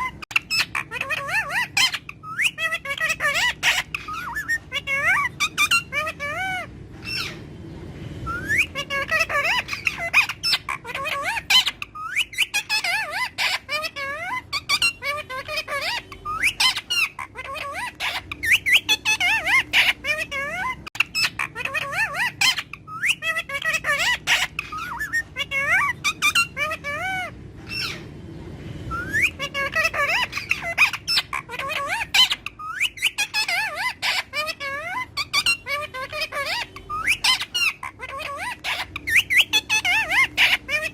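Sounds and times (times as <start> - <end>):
parakeet chattering and squawking: 0.0 - 40.9.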